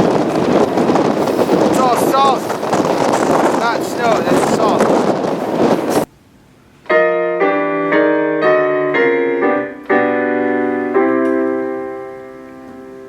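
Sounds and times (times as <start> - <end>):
piano chords: 6.4 - 13.0.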